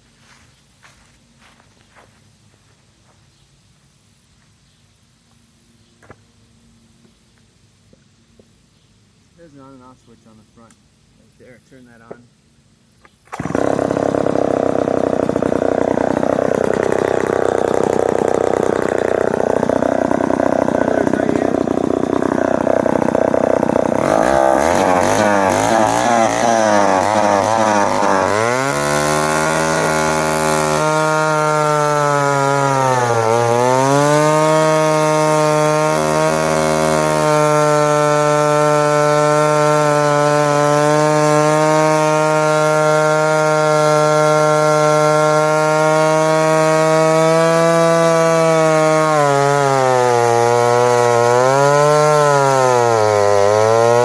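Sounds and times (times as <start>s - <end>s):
chainsaw cutting a log: 13.3s - 54.0s.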